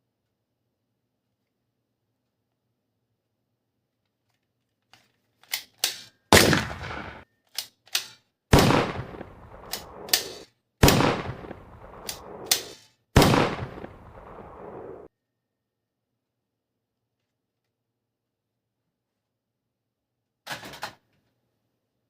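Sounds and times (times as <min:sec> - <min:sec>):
toy gunshot echoing: 0:06.3 - 0:07.2.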